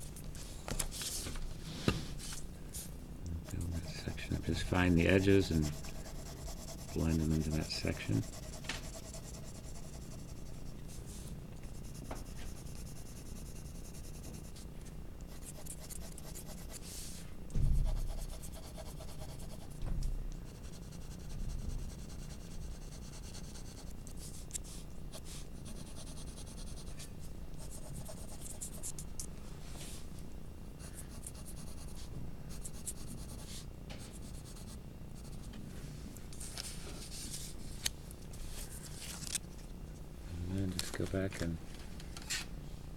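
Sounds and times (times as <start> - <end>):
pencil scratching on paper: 3.5 - 10.7, 11.7 - 14.6, 15.3 - 17.2, 17.8 - 19.8, 20.6 - 29.0, 30.8 - 35.5
pencil shading on paper: 3.6 - 10.7, 15.3 - 16.9, 17.9 - 19.8.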